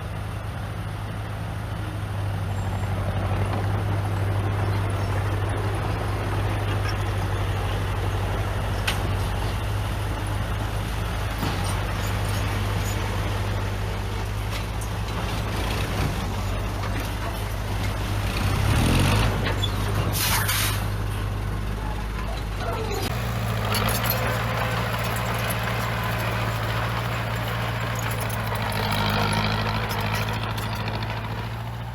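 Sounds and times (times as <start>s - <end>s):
heavy diesel engine running: 20.9s - 31.9s.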